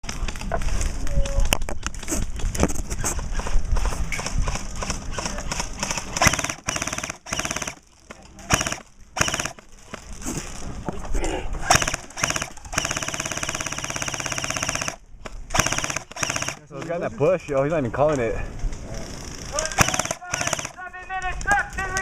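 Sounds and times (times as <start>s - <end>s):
airsoft guns firing bursts: 4.2s - 7.8s, 8.4s - 9.7s, 11.7s - 17.0s, 19.3s - 21.1s.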